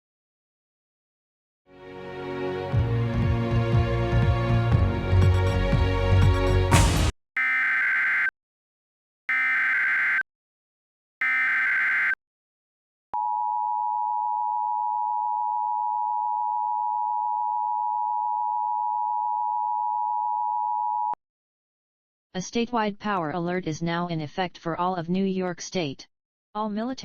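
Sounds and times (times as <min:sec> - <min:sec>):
steady two-tone alarm: 0:07.4 - 0:08.3, 0:09.3 - 0:10.2, 0:11.2 - 0:12.2
digital data bursts: 0:09.3 - 0:10.2, 0:11.2 - 0:12.2.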